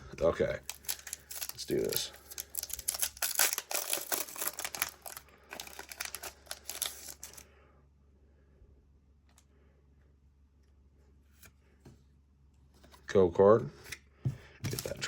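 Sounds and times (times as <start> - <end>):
foil wrapper tearing and crinkling: 0.6 - 7.4.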